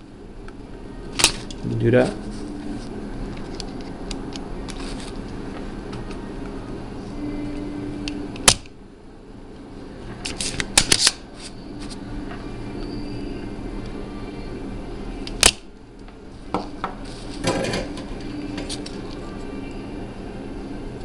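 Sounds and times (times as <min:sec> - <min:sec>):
low steady hum: 0:00.0 - 0:21.0
desoldering pump snapping: 0:01.2 - 0:01.6, 0:08.0 - 0:08.7, 0:15.2 - 0:16.1.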